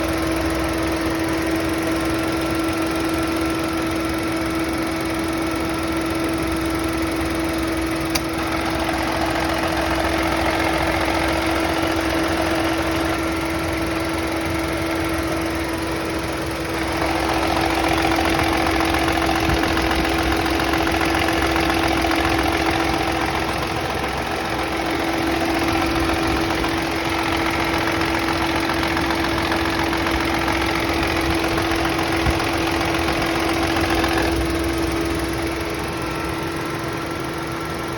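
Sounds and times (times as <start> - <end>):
car engine idling: 0.0 - 37.9
steady whining tone: 7.5 - 37.9
sharp click: 8.1 - 8.4.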